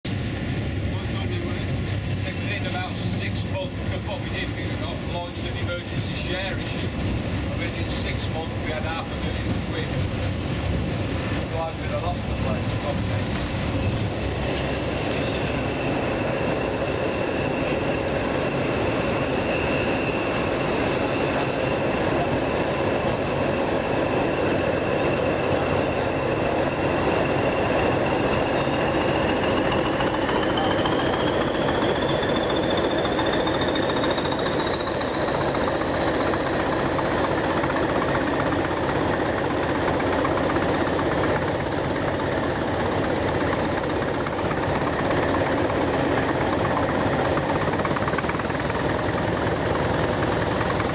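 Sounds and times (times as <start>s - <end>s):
diesel locomotive engine: 0.0s - 50.9s
high whistle: 30.4s - 50.9s.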